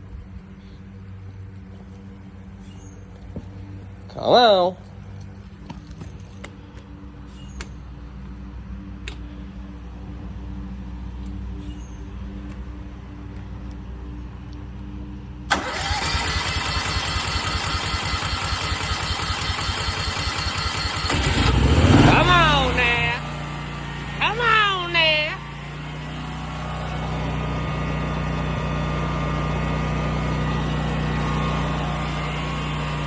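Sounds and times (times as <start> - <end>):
generator engine running: 15.5 - 33.0.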